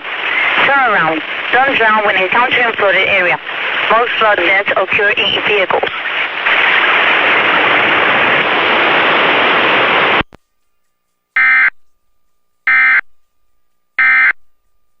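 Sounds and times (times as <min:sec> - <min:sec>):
loud static hiss: 0:00.0 - 0:10.3.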